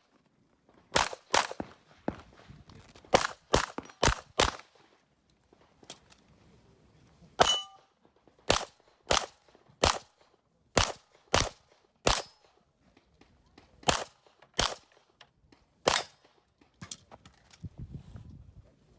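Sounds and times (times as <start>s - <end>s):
handgun shots: 1.0s - 1.7s, 10.8s - 12.4s
metallic ring of steel target: 7.4s - 7.8s.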